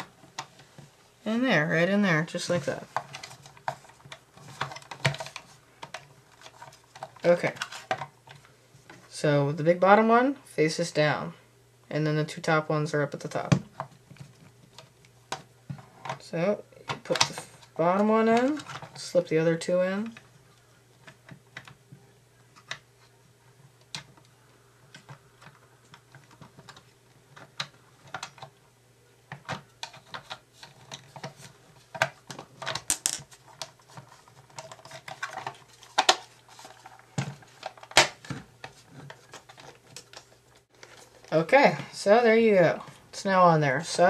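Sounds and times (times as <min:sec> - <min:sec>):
faint steady hum: 0:00.0 - 0:44.0
plastic parts clicking: 0:24.9 - 0:28.5, 0:29.3 - 0:41.3.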